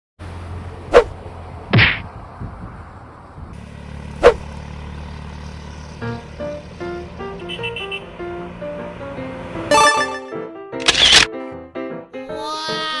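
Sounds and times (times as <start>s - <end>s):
sharp whack impacts: 1.7s - 2.1s, 4.2s - 4.4s.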